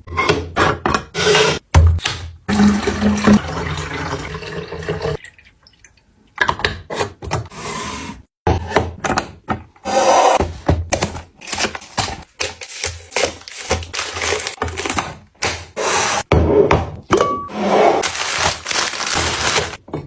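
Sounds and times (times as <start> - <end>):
water running: 2.5 - 6.1.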